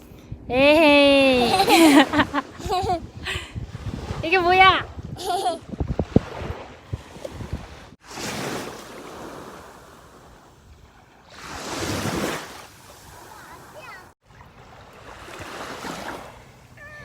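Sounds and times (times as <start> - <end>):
sea waves washing on beach: 5.9 - 17.0.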